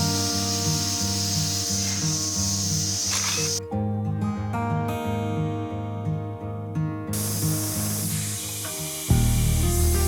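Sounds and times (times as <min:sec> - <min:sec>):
steam hissing: 0:00.0 - 0:03.6, 0:07.2 - 0:10.0
background music: 0:00.0 - 0:10.0.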